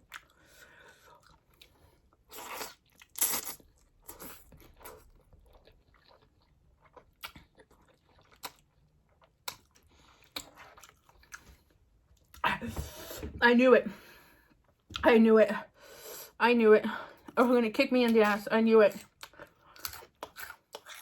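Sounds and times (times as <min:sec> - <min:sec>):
person chewing crunchy food: 0:00.0 - 0:12.4, 0:19.0 - 0:21.0.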